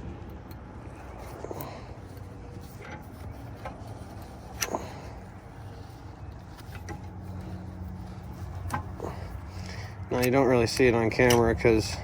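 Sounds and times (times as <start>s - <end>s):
steady low hum: 0.0s - 12.0s
metallic clicks of clamp: 10.2s - 11.5s.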